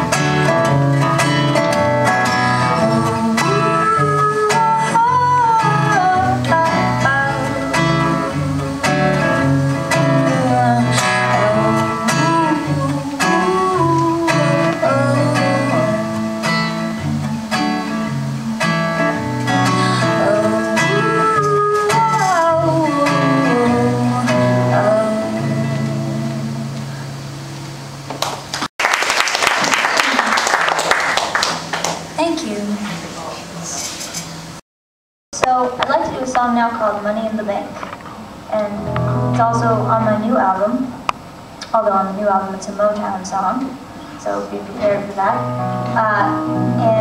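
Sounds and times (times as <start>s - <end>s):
plucked acoustic guitar: 0.0s - 28.5s, 37.7s - 40.6s, 44.8s - 47.0s.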